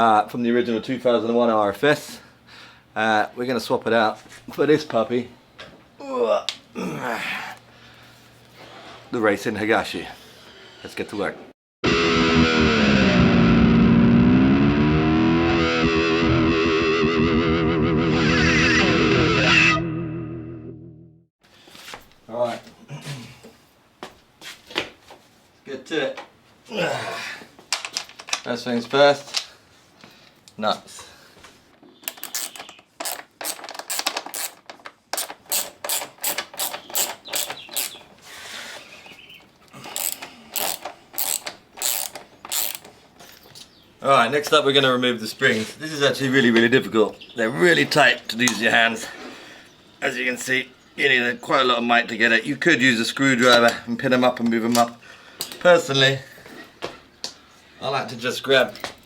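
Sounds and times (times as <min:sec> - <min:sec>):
distorted electric guitar music: 0:11.8 - 0:21.2
ratchet wrench clicking: 0:32.3 - 0:34.6, 0:35.2 - 0:37.9, 0:40.0 - 0:42.9.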